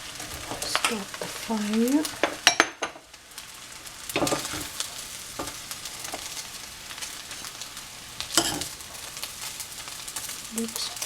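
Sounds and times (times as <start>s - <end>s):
fried rice sizzling in a pan: 0.0s - 11.0s
utensil scraping a pan: 4.1s - 6.4s, 8.3s - 9.6s.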